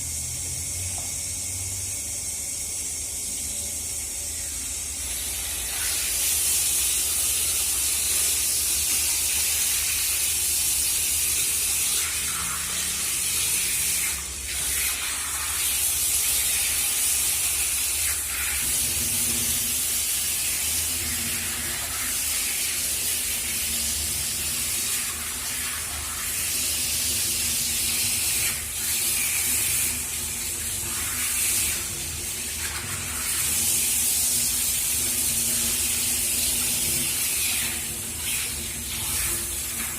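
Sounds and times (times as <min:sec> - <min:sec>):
shower water spraying: 0:00.1 - 0:39.9.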